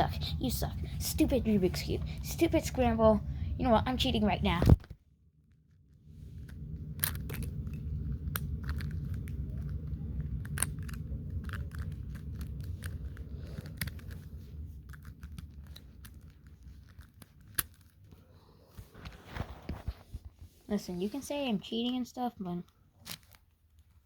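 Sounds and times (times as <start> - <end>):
low handling rumble: 0.0 - 4.8, 5.4 - 22.0
puzzle cube clicking and snapping: 6.4 - 18.0.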